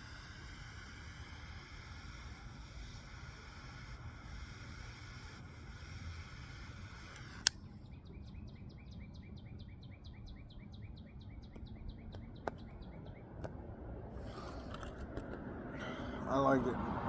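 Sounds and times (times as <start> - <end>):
torch lighter hissing: 0.0 - 7.6, 14.2 - 15.0
high chirps: 0.0 - 13.2
lighter click: 0.1 - 7.6.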